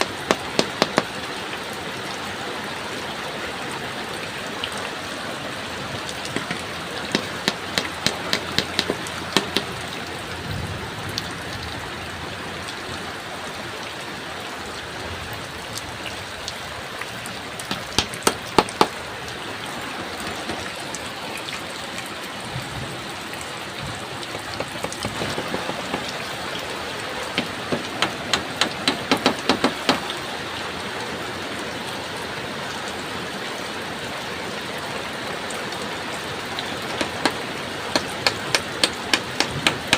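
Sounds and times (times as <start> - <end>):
quick evenly spaced knocks: 0.0 - 1.1, 6.3 - 9.8, 17.6 - 19.0, 24.3 - 26.2, 27.3 - 30.1, 36.8 - 39.9
heavy rain: 0.0 - 39.9.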